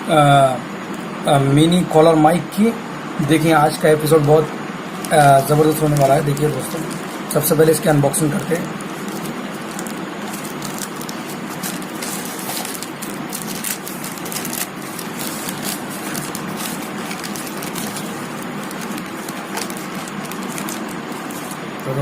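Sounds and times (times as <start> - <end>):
steady hiss: 0.1 - 22.0
cardboard and plastic crackling: 5.0 - 22.0.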